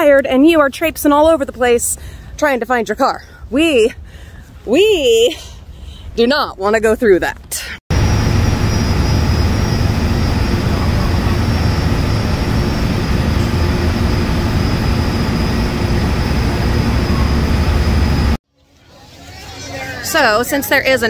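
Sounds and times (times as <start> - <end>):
faint high whine: 7.9 - 18.4
vehicle low rumble: 7.9 - 18.4.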